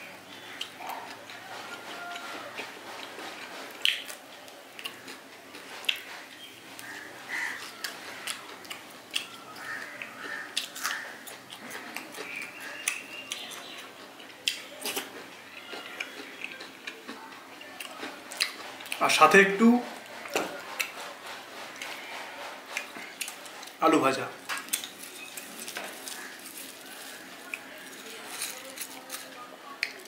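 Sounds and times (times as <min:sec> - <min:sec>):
person chewing food: 0:00.0 - 0:19.2, 0:19.9 - 0:23.8, 0:24.4 - 0:30.0
mouth clicks and smacks: 0:03.8 - 0:04.2.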